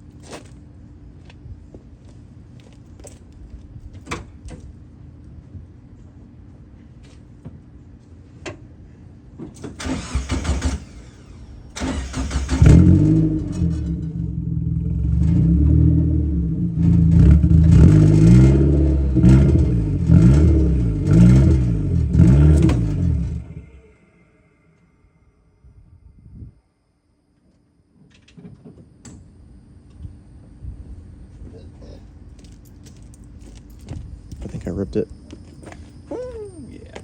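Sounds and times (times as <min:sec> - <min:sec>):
car engine cranking: 0:09.6 - 0:14.2, 0:16.8 - 0:23.9
car engine revving: 0:09.8 - 0:24.6.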